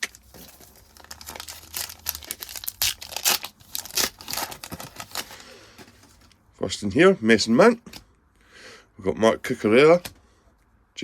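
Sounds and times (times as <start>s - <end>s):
wrapper crinkling and tearing: 0.0s - 5.5s.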